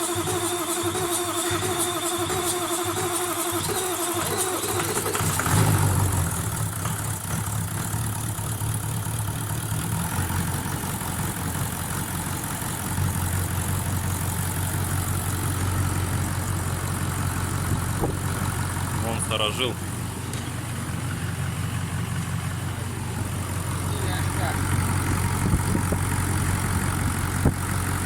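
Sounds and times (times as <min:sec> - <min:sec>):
diesel engine starting and idling: 0:00.0 - 0:28.0.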